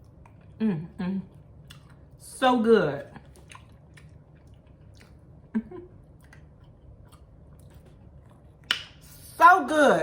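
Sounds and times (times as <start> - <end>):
close-up chewing: 1.3 - 2.2, 3.0 - 8.8.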